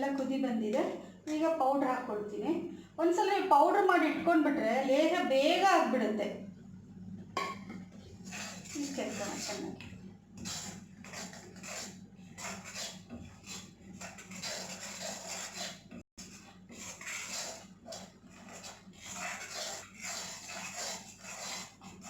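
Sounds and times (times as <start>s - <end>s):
spoon scraping thick mixture: 8.0s - 22.0s.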